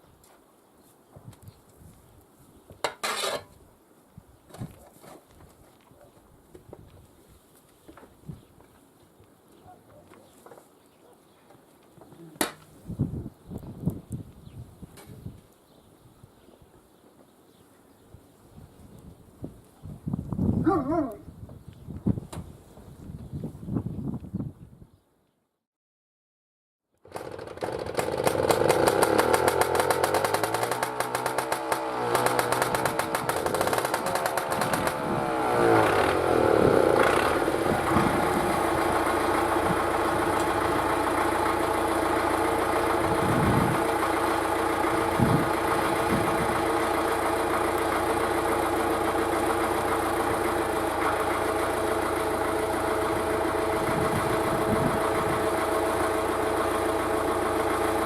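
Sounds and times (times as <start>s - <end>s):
engine starting and idling: 27.0s - 58.0s.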